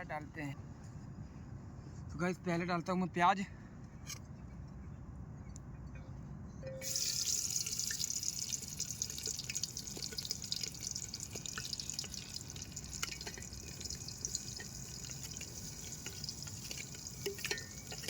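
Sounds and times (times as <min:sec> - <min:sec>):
onion sizzling in hot oil: 0:06.8 - 0:18.0.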